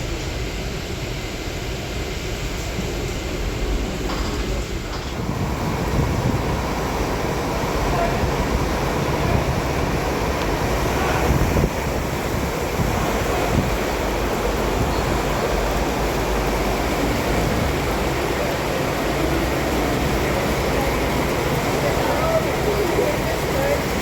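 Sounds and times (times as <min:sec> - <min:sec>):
road and tyre rumble: 0:04.3 - 0:22.3.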